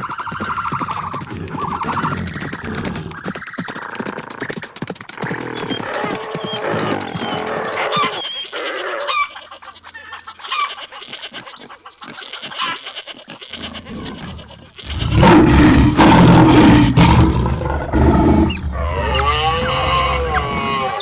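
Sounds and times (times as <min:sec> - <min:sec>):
animal stampede rumble: 0:00.0 - 0:03.7, 0:13.5 - 0:21.0
rapid patter of clicks: 0:00.0 - 0:07.5.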